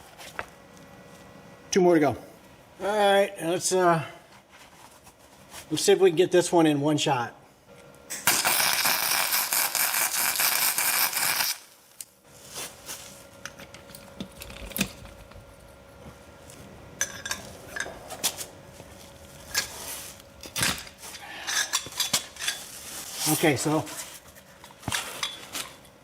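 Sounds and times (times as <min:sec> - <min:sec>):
welding arc crackling: 0:08.1 - 0:12.2.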